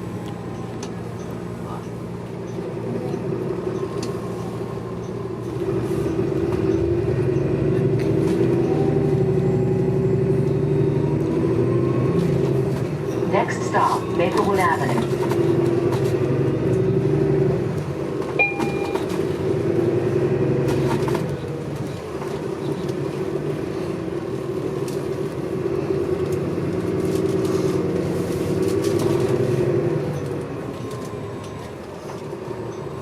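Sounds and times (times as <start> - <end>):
bus engine drone: 0.0 - 33.0
road noise: 0.0 - 33.0
short beep: 18.4 - 19.1.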